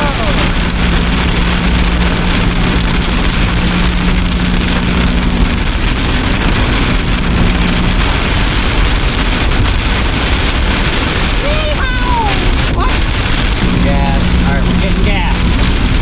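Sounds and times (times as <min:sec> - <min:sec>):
heavy rain on vehicle: 0:00.0 - 0:16.0
steady low hum: 0:12.5 - 0:16.0.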